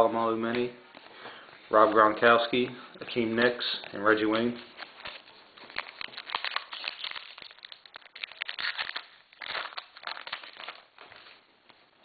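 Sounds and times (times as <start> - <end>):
wrapper tearing and crinkling: 4.6 - 11.4.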